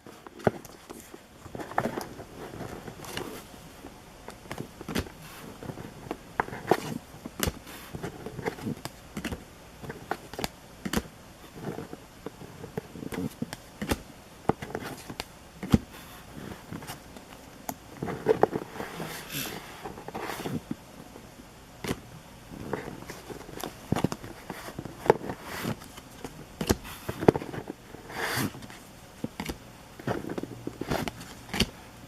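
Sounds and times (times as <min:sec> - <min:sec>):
cards clicking and tapping: 0:04.3 - 0:11.1, 0:12.7 - 0:15.8, 0:22.7 - 0:31.8.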